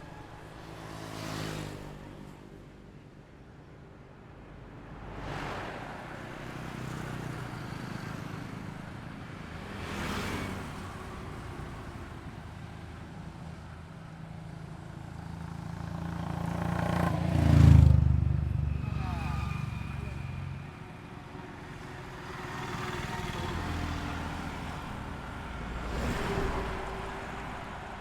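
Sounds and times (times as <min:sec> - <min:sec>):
highway traffic engine hum: 0:00.0 - 0:28.0
vehicles swishing past: 0:04.8 - 0:08.8, 0:15.6 - 0:28.0
heavy vehicle passing: 0:21.6 - 0:28.0.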